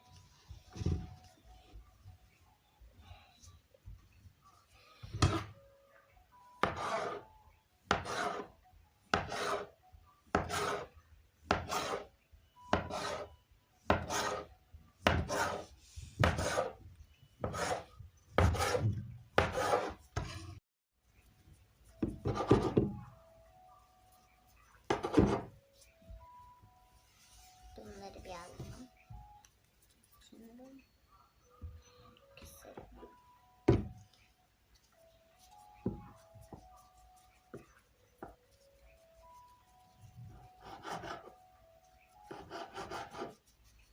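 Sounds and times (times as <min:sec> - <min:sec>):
rolling pin rolling dough on wood: 0:06.6 - 0:07.3, 0:07.9 - 0:09.7, 0:10.3 - 0:12.1, 0:12.7 - 0:13.3, 0:13.9 - 0:16.8, 0:17.4 - 0:20.5, 0:21.9 - 0:23.0, 0:24.9 - 0:25.6, 0:40.5 - 0:41.4.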